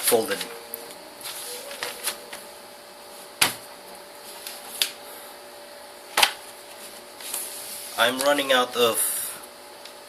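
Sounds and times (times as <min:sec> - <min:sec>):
paper handling noise: 0:00.3 - 0:02.5, 0:06.1 - 0:08.4.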